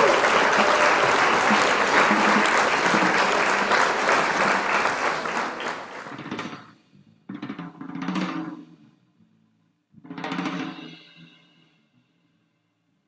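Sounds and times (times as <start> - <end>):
applause: 0.0 - 6.5.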